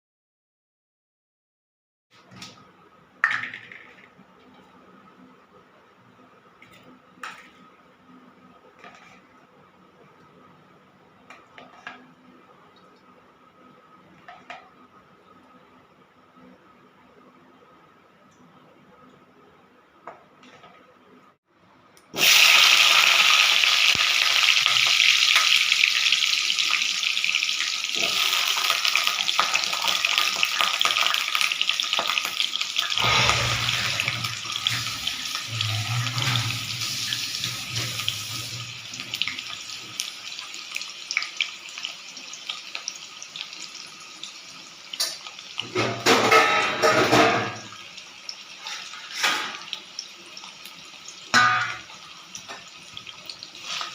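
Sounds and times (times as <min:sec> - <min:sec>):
potatoes sizzling in hot oil: 0:22.1 - 0:53.9.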